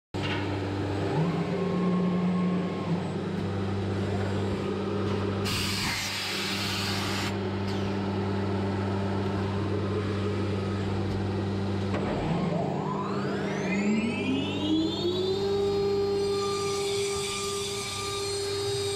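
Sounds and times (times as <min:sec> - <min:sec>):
cnc router humming: 0:00.2 - 0:18.9
rising machine whine: 0:00.2 - 0:18.9
burst of hiss: 0:05.5 - 0:07.3.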